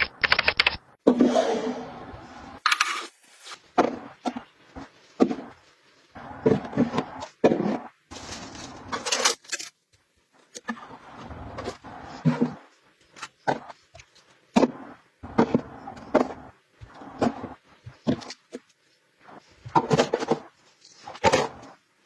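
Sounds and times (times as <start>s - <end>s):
household items scraped and rustled: 1.1s - 9.8s.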